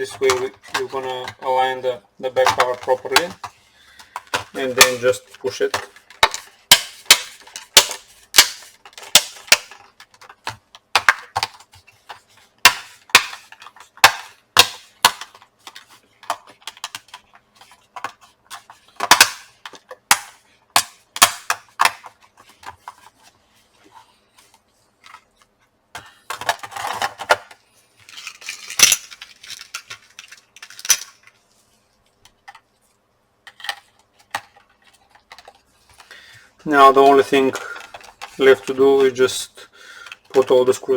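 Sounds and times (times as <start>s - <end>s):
plastic scraping and rattling: 0.0s - 20.2s, 21.2s - 31.4s.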